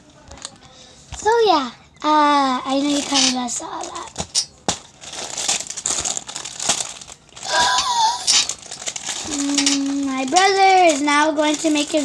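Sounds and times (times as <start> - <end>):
packaging crinkling and rustling: 2.7 - 12.0.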